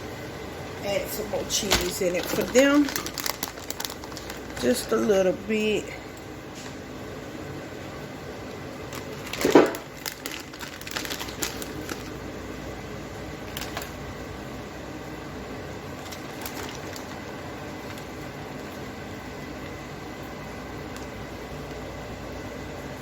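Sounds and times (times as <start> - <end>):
crinkling and light clicks: 1.6 - 4.9, 8.5 - 12.2, 13.5 - 14.0, 16.0 - 18.8.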